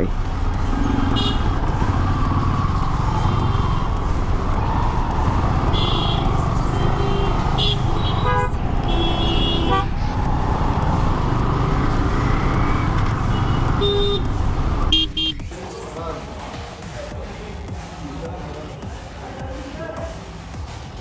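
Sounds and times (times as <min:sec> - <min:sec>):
traffic engines rumbling: 0:00.0 - 0:16.4
vehicle horns honking: 0:01.0 - 0:01.7, 0:05.6 - 0:10.0, 0:13.2 - 0:15.5.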